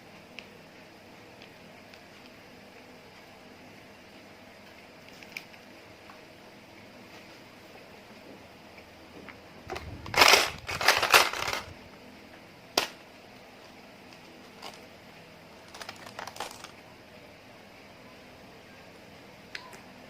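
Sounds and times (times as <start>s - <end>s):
small crackles: 4.7s - 6.2s, 15.6s - 16.8s.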